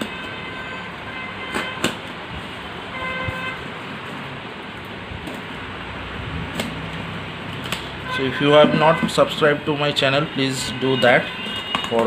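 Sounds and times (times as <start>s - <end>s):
vehicle horn toots: 0.0s - 2.0s, 2.9s - 3.7s, 8.0s - 12.0s
background traffic: 0.0s - 12.0s.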